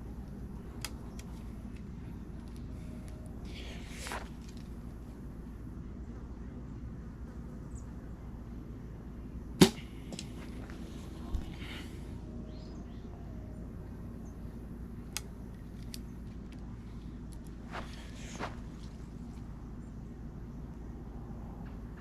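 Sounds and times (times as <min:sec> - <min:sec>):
bowstring snap: 0:09.6 - 0:10.3.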